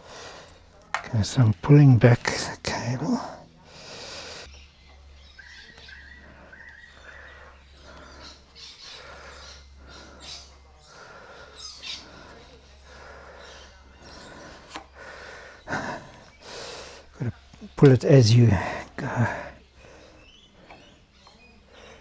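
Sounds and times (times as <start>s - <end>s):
small birds chirping: 0.0s - 22.0s
short breath: 3.1s - 4.5s, 6.2s - 22.0s.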